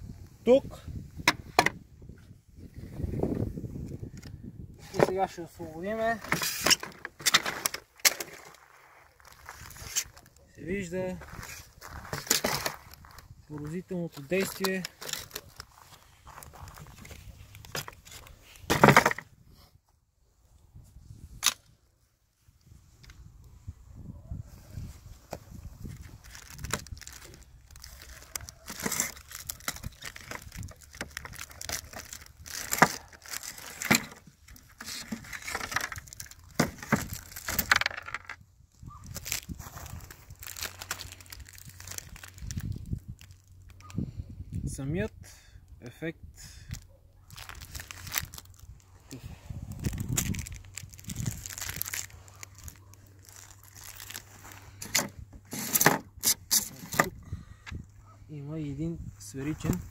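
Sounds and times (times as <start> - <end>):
crinkling and rustling: 2.7 - 19.3, 24.7 - 43.9, 46.7 - 57.2.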